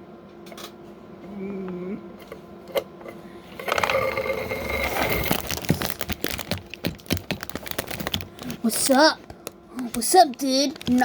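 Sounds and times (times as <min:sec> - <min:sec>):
plastic bricks clattering: 0:03.7 - 0:11.0.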